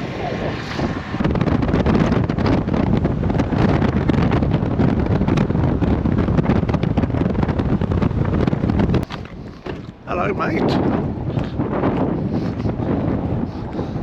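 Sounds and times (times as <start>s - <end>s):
moving car rumble: 0.0s - 14.0s
wind buffeting microphone: 0.0s - 14.0s.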